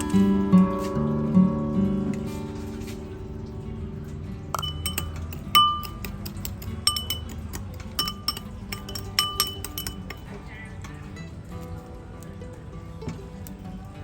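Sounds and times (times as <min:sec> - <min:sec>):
soft guitar music: 0:00.0 - 0:14.0
sharp clinks on kitchenware: 0:04.6 - 0:10.4.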